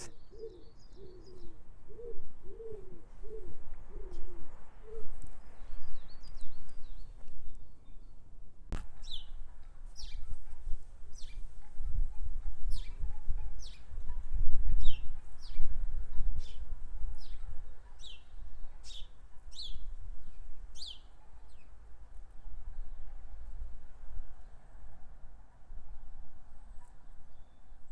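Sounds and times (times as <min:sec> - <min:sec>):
pigeon cooing: 0:00.0 - 0:05.1.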